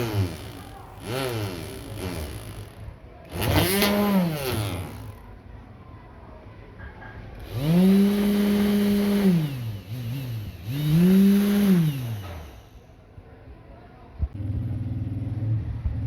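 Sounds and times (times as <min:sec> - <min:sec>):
electric motor whining: 0:00.0 - 0:05.3, 0:07.4 - 0:12.8.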